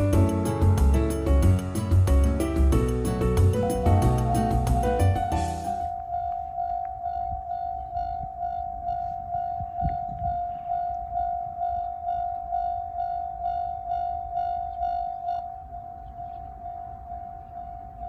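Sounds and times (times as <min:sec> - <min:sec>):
low rumble: 0:02.6 - 0:10.4
level crossing warning bell: 0:03.6 - 0:18.0.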